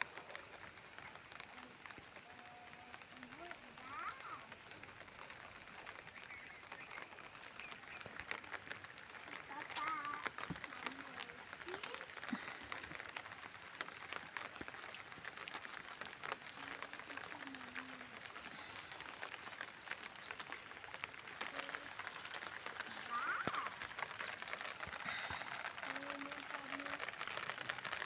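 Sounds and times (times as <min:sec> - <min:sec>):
steady rain falling: 0:00.0 - 0:28.0
birds chirping: 0:05.4 - 0:13.2, 0:15.6 - 0:28.0.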